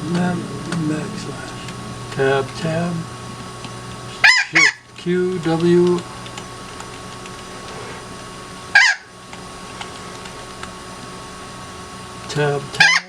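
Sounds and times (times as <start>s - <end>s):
steady electrical hum: 0.0s - 13.0s
loud bird squawk: 4.1s - 4.8s, 8.7s - 9.1s.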